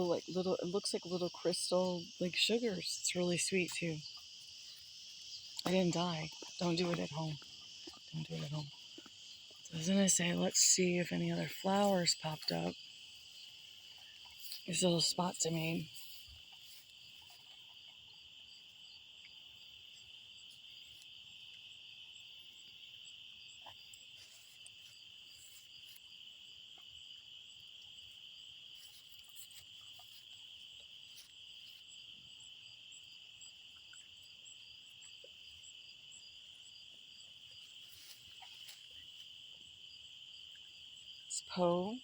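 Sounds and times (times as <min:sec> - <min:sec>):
insect high trill: 0:00.0 - 0:19.4.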